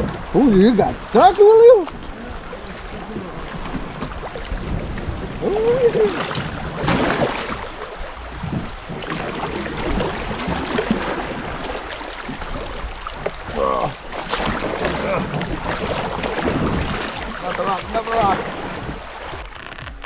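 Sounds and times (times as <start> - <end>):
river water splashing and lapping: 0.0 - 20.0
person humming: 13.5 - 14.0.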